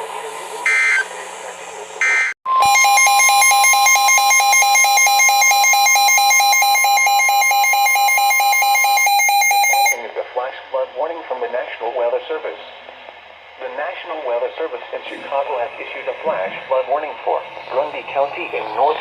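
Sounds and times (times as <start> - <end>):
digital data noise burst: 0.6 - 1.1, 2.0 - 2.3
rapidly pulsing electronic alarm beep: 0.6 - 1.1, 2.0 - 10.0
steady warning alert tone: 0.7 - 1.1, 2.0 - 10.0.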